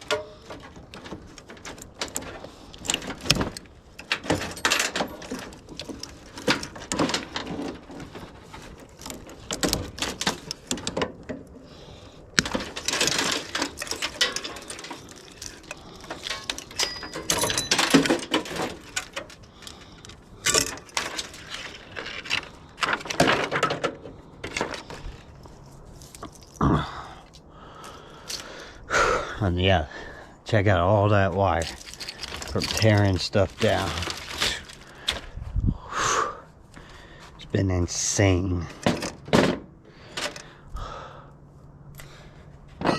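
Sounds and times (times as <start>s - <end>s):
metal and plastic parts clattering: 0.0s - 26.6s, 31.4s - 35.3s, 38.7s - 40.5s.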